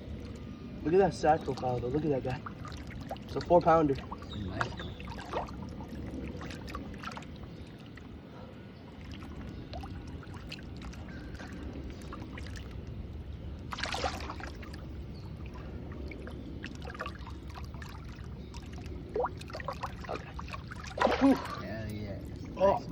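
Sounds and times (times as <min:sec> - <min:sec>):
water sloshing and trickling: 0:00.0 - 0:22.9
loud splash: 0:13.7 - 0:18.2, 0:19.1 - 0:21.7.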